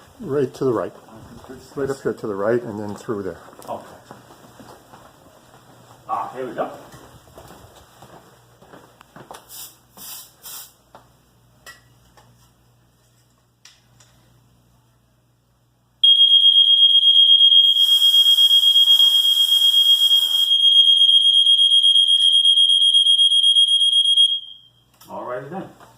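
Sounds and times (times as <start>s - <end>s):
hiss: 9.5s - 10.8s
high-pitched alarm tone: 16.0s - 24.8s.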